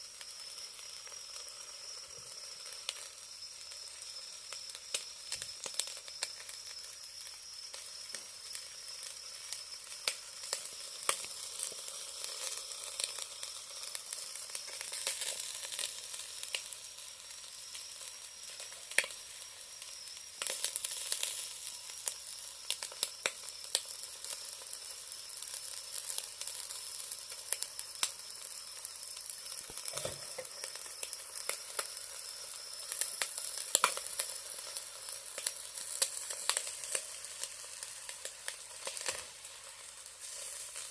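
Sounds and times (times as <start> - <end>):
meat sizzling on a grill: 0.0 - 40.9
fat popping and crackling: 29.1 - 32.0, 32.8 - 39.6.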